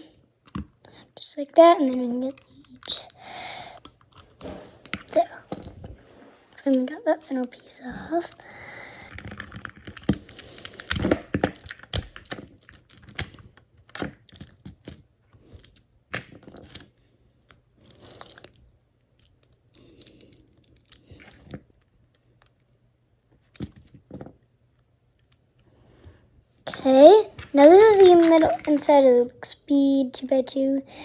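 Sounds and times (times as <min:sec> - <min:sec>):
plastic cube pieces clicking: 0:08.2 - 0:16.9, 0:26.6 - 0:29.2.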